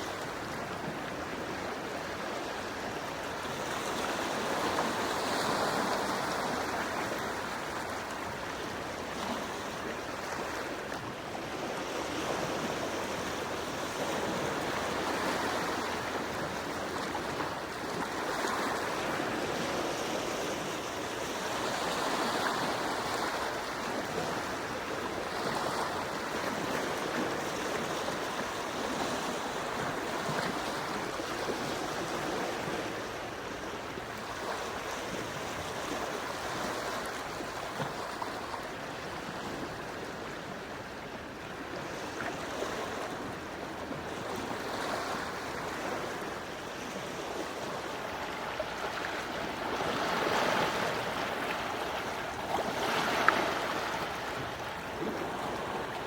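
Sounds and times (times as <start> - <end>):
sea waves washing onto shore: 0.0 - 56.0.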